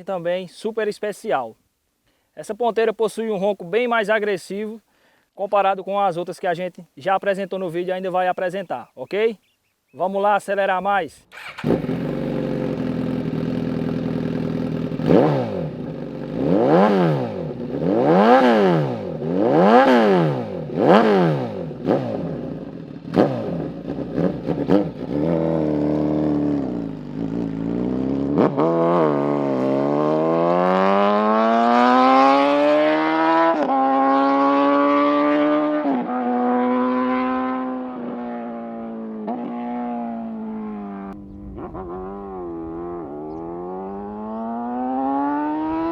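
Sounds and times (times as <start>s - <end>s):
motorcycle engine revving: 11.2s - 45.9s.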